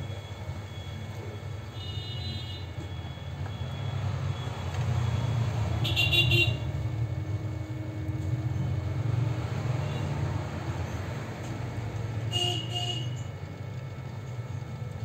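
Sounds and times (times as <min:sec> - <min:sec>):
low traffic rumble: 0:00.0 - 0:15.0
high pulsing horn toot: 0:01.7 - 0:11.2, 0:12.0 - 0:13.3.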